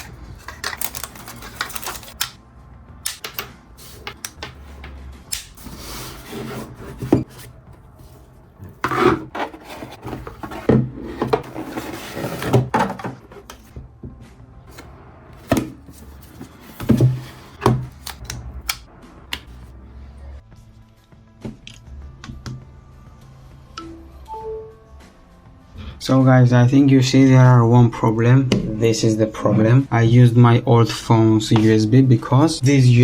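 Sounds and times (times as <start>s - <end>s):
cardboard and plastic rubbing: 0.0s - 2.2s, 5.5s - 13.7s, 14.7s - 18.3s.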